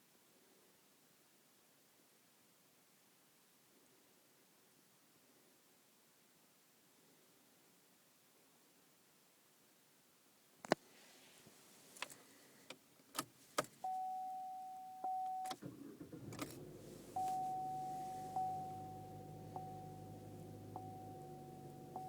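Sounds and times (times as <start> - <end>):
dashboard chime dinging: 13.9 - 15.6, 17.1 - 22.0
car engine cranking and idling: 15.0 - 22.0.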